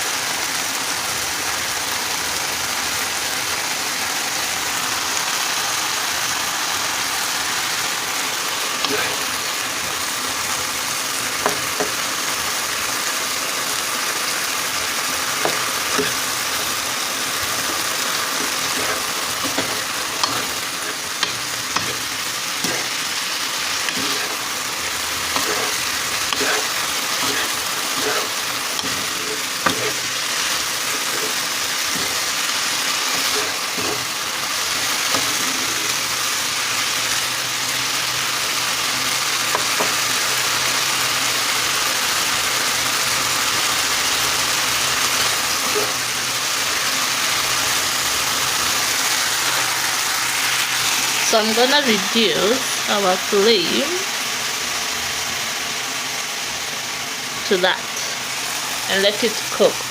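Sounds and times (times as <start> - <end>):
food sizzling in hot oil: 0.0 - 59.9
spoon tapping a pan: 11.4 - 12.0.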